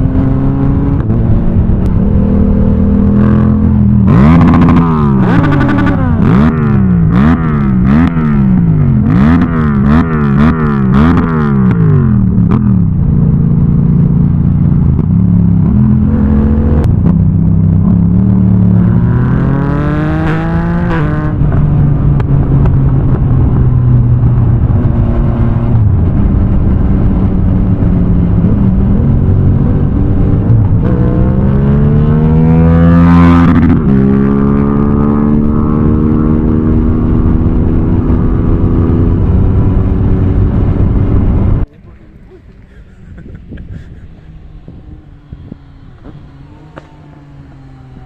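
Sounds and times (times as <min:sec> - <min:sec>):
motorcycle engine revving: 0:00.0 - 0:41.9, 0:42.5 - 0:48.0.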